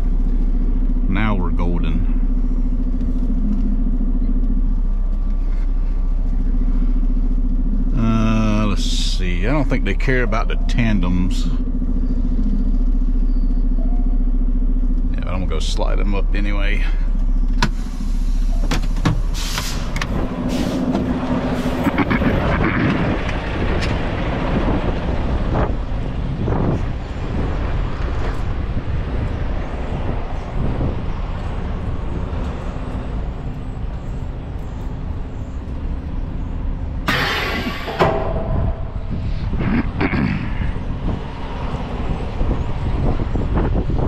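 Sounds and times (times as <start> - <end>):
truck diesel engine running: 0.0 - 44.0
air brake hiss: 17.8 - 18.6, 19.3 - 19.9, 20.5 - 20.9.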